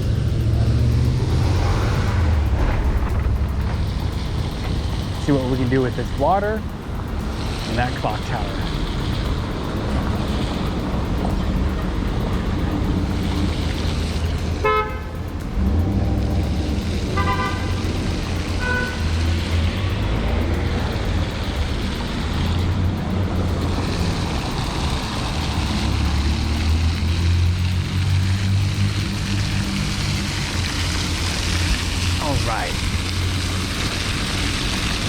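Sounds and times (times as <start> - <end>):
low street rumble: 0.0 - 35.0
car horn toots: 14.5 - 19.2.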